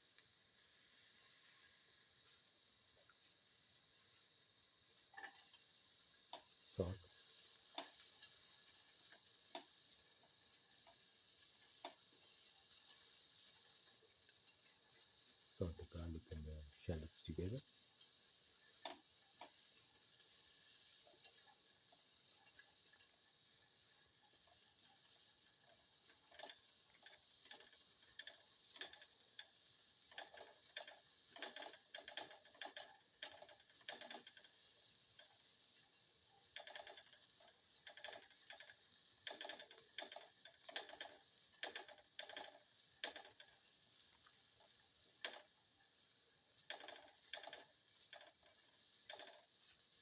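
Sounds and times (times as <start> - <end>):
spatula scraping and clicking on pan: 0.2 - 50.0.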